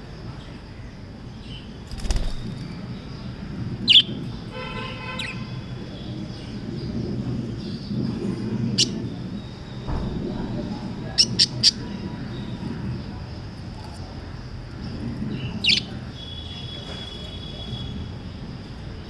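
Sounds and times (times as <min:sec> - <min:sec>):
budgerigars chirping: 0:03.9 - 0:04.1, 0:05.1 - 0:05.4, 0:11.1 - 0:12.6, 0:15.3 - 0:16.6
knock: 0:09.9 - 0:10.6.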